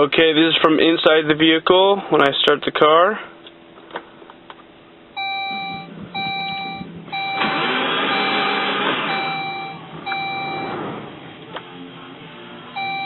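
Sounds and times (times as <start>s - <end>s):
dashboard warning chime beeping: 5.2s - 10.9s, 12.8s - 13.0s
starter cranking engine: 7.1s - 10.8s.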